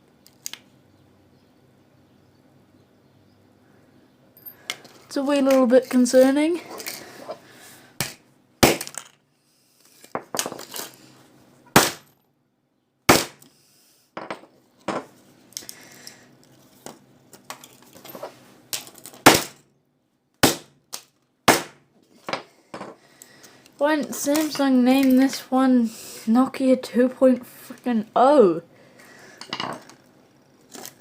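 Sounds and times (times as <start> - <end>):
phone casing being smashed: 8.0 - 9.2.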